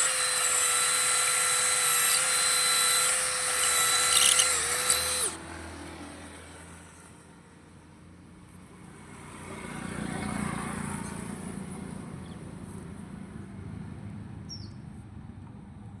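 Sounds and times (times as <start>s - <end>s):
vehicle passing by: 8.7s - 12.1s
bird chirp: 14.5s - 14.8s.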